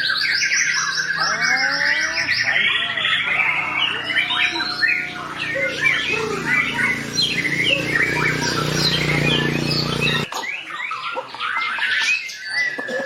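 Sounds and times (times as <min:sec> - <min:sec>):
bird singing varied song: 0:00.0 - 0:13.0.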